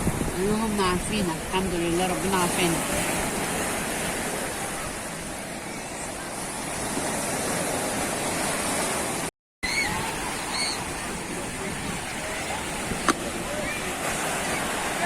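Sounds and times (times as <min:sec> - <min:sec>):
waves washing on sandy beach: 0:00.0 - 0:15.0.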